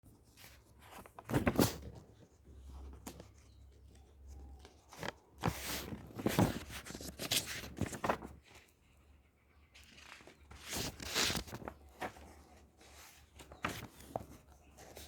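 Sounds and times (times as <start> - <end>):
book pages rustling and flipping: 0.1 - 8.7, 9.8 - 15.0.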